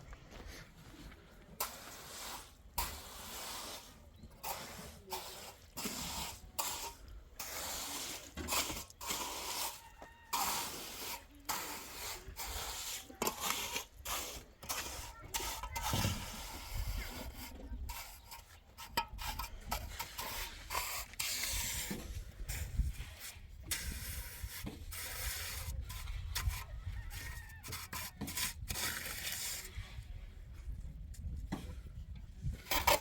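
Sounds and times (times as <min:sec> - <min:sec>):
scraping rasping strokes: 0:01.0 - 0:30.0, 0:32.5 - 0:33.0.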